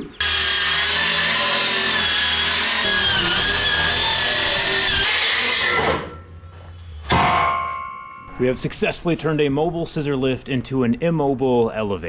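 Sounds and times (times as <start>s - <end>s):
power tool whining: 0.2s - 6.2s.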